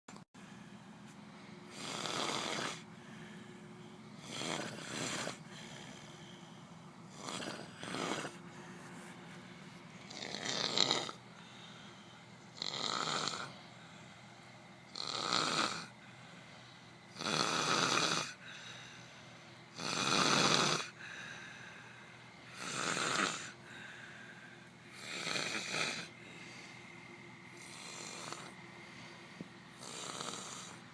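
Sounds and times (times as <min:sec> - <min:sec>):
person snoring: 0:01.7 - 0:02.9, 0:04.2 - 0:06.4, 0:07.1 - 0:08.4, 0:10.0 - 0:11.9, 0:12.5 - 0:13.7, 0:14.9 - 0:16.0, 0:17.1 - 0:18.8, 0:19.7 - 0:21.5, 0:22.5 - 0:24.0, 0:24.9 - 0:26.9, 0:27.6 - 0:29.1, 0:29.7 - 0:30.8.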